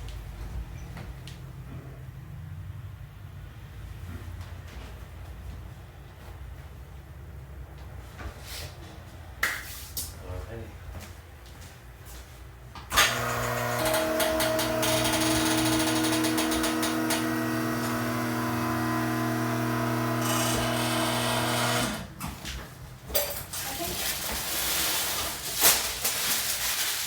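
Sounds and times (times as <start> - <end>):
small electric motor humming: 12.9 - 22.1.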